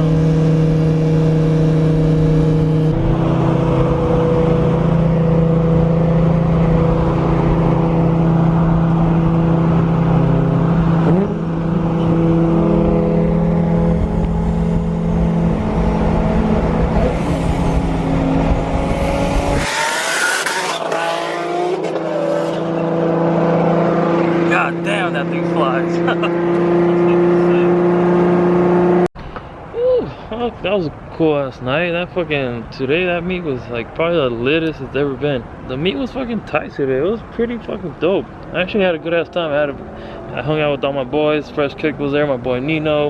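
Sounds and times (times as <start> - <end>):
car engine revving hard: 0.0 - 29.1.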